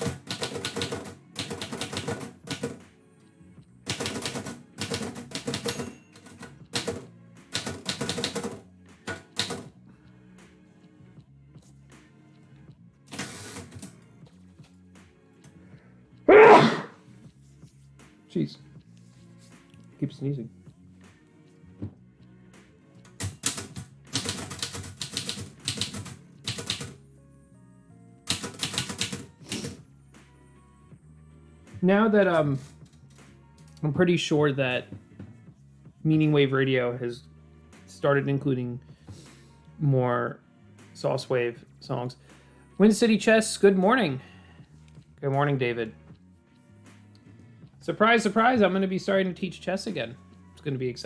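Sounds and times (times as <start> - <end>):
typewriter typing: 0.0 - 2.8, 3.9 - 9.7, 13.1 - 13.9, 23.2 - 27.0, 28.3 - 29.8.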